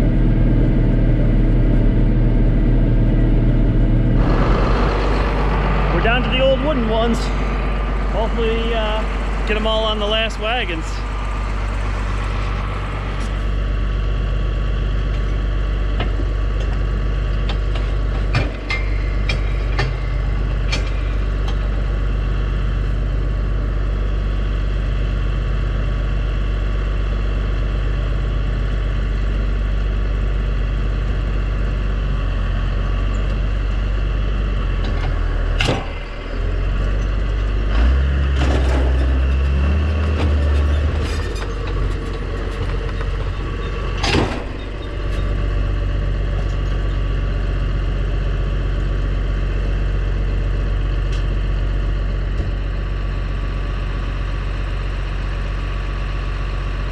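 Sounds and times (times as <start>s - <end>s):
tractor diesel engine running: 0.0s - 56.9s.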